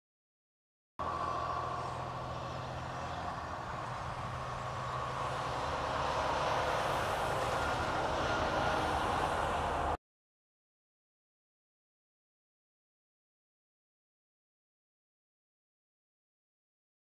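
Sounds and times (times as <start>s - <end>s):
truck diesel engine running: 1.0s - 10.0s.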